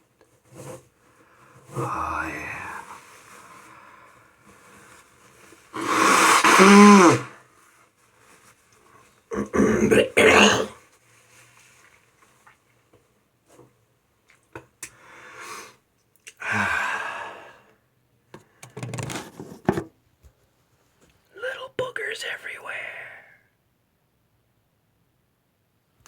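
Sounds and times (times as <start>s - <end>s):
person coughing: 9.5s - 10.8s.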